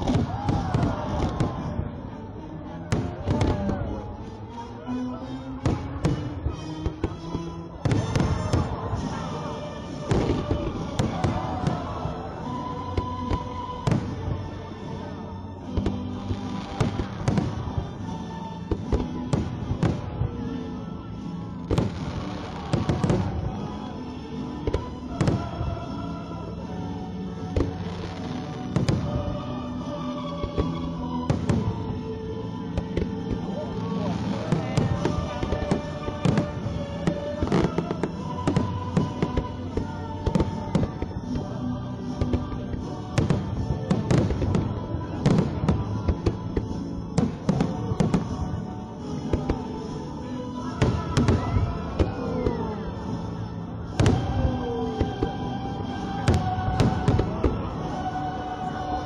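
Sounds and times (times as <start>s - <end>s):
fireworks bursting: 0.0s - 2.1s, 5.6s - 15.0s, 15.6s - 20.6s, 21.3s - 25.8s, 27.4s - 58.7s
music playing: 0.0s - 59.0s
fireworks bangs: 32.8s - 41.4s.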